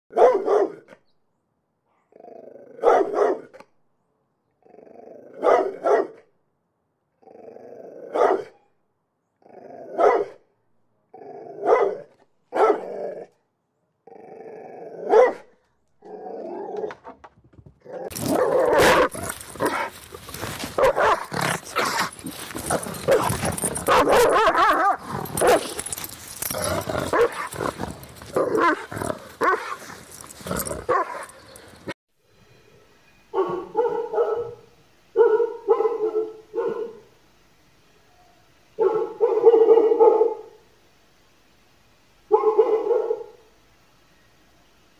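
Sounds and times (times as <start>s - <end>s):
dog growling and barking: 2.1s - 3.6s, 4.6s - 6.2s, 7.2s - 8.6s, 9.4s - 10.4s, 11.1s - 13.4s, 14.0s - 17.0s, 17.8s - 32.0s.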